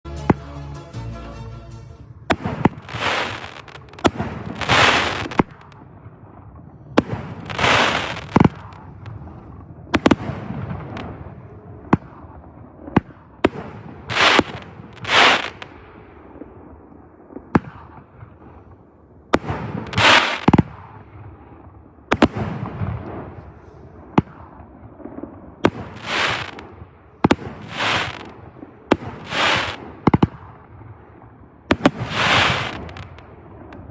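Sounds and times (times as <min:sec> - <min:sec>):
fireworks hissing crackle: 0:00.1 - 0:05.8, 0:07.0 - 0:09.2, 0:14.1 - 0:15.7, 0:19.9 - 0:20.5, 0:25.7 - 0:26.7, 0:27.3 - 0:29.9, 0:31.8 - 0:33.3
fireworks bangs: 0:02.0 - 0:18.6, 0:19.4 - 0:33.9.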